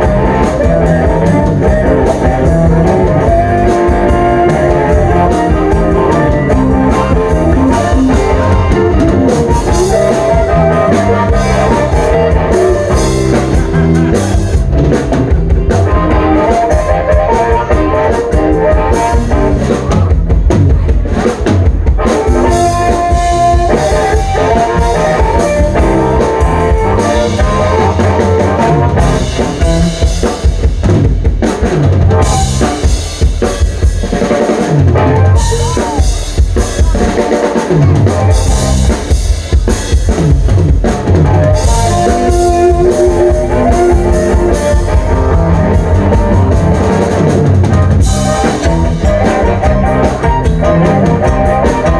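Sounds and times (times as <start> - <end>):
lead instrument bending notes: 0.0 - 20.2, 22.0 - 30.2, 40.9 - 51.9
bass guitar: 0.0 - 51.9
blues band playing: 0.0 - 51.9
drum kit beat: 0.0 - 51.9.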